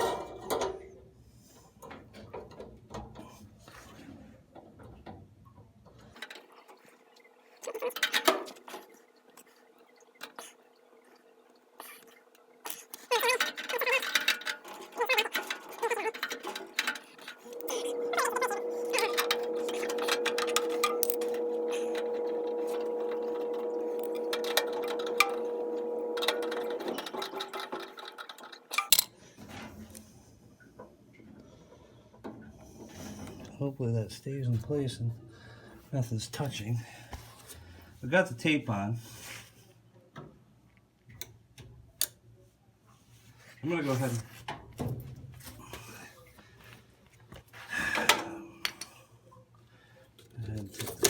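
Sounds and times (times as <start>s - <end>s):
electrical hum: 1.8s - 39.3s.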